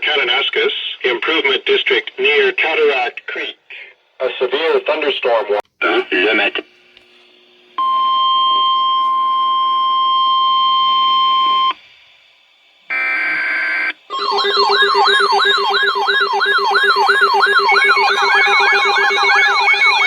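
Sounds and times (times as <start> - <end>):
steady low hum: 0.0 - 20.0
steady alarm tone: 7.8 - 11.9, 12.9 - 20.0
buzzy burst: 10.6 - 20.0
siren wailing up and down: 12.9 - 20.0.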